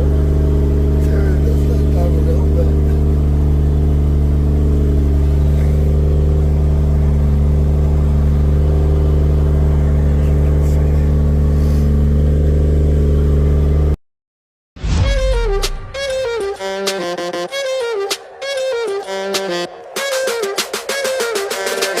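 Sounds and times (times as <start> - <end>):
car engine idling: 0.0 - 14.0.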